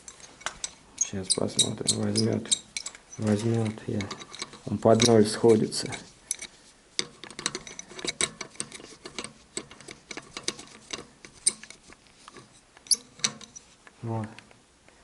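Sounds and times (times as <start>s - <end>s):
wrench metallic clicks and taps: 0.0s - 5.2s, 6.3s - 13.6s.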